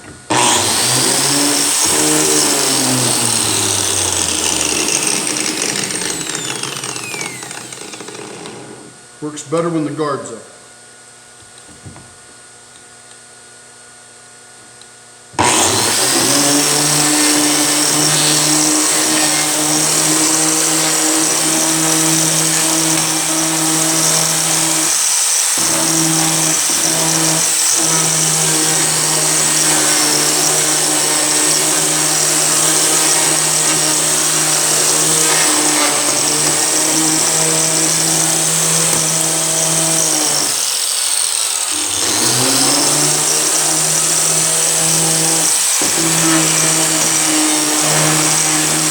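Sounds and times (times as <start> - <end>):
grinder motor whine: 0.0 - 9.0, 15.4 - 48.9
grinding rasp on rubber: 0.3 - 8.6, 15.4 - 48.9.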